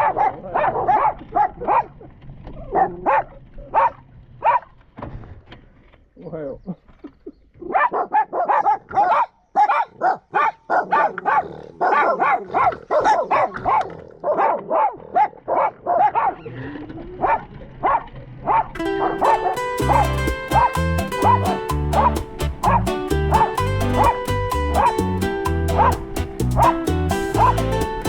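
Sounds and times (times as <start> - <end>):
dog barking rapidly: 0.0 - 2.1, 2.7 - 4.7, 7.6 - 16.4, 17.2 - 28.0
music with steady bass beat: 18.8 - 28.0.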